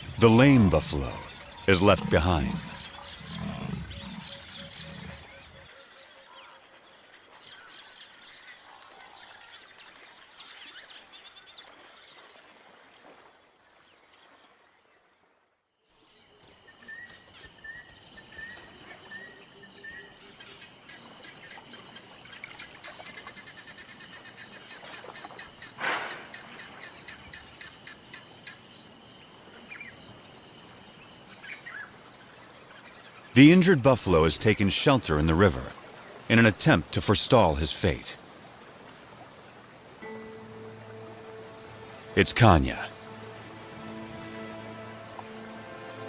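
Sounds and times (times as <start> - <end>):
birds calling and chirping: 0.0 - 6.6, 16.0 - 34.3.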